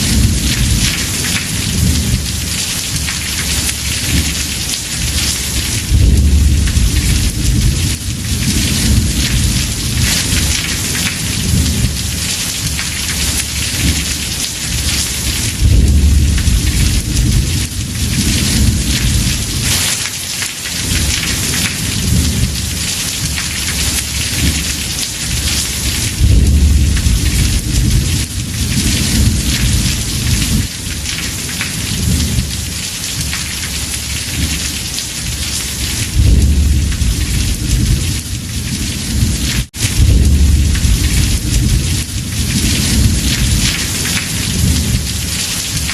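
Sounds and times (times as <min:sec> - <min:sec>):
low thunder rumbling: 0:00.0 - 0:20.1, 0:20.8 - 0:45.9
heavy rain drumming on roof: 0:00.0 - 0:45.9.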